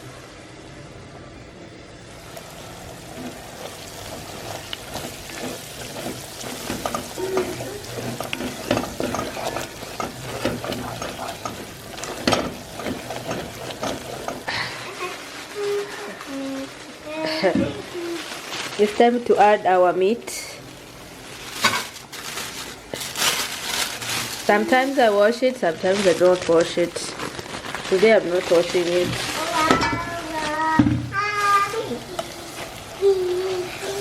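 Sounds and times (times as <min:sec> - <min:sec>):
onions sizzling in a pot: 0:01.8 - 0:34.0
spoon scraping a pot: 0:03.1 - 0:14.6.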